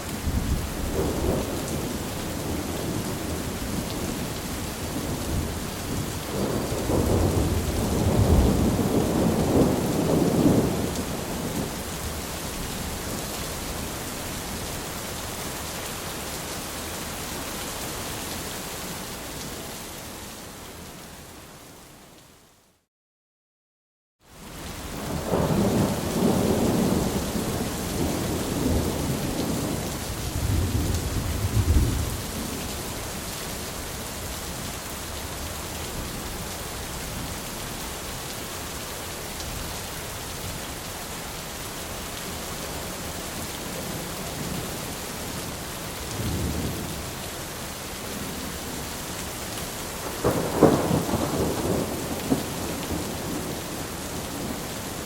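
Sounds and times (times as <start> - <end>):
steady rain: 0.0 - 22.8, 24.2 - 55.0
rolling thunder: 4.9 - 11.7, 25.1 - 32.6, 50.0 - 54.6.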